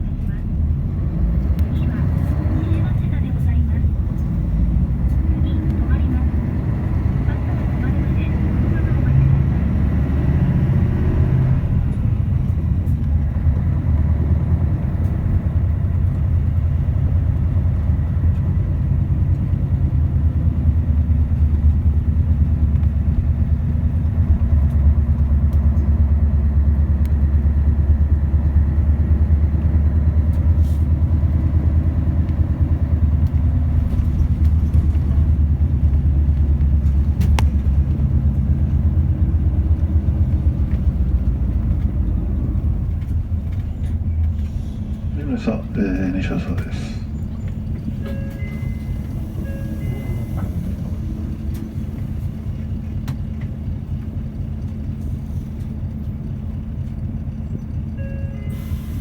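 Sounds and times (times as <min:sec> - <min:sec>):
bus engine rumble: 0:00.0 - 0:59.0.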